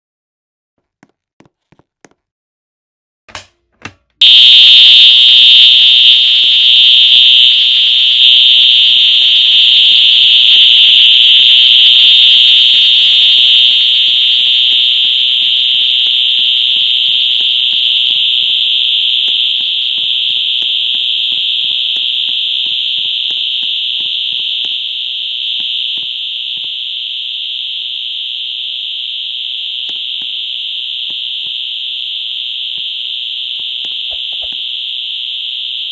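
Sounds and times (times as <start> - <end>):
fire alarm high-pitched tone: 4.2 - 35.9.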